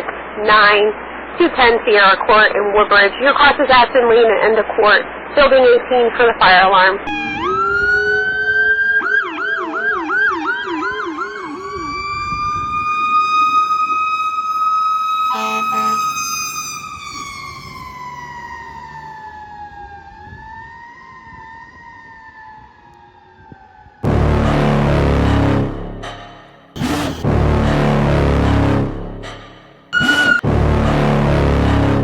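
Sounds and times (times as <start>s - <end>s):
electronic siren yelping: 7.0s - 24.4s, 29.9s - 30.4s
mechanical siren wailing: 7.0s - 32.0s
horn blast: 7.1s - 17.3s, 24.0s - 32.0s
music: 24.1s - 32.0s.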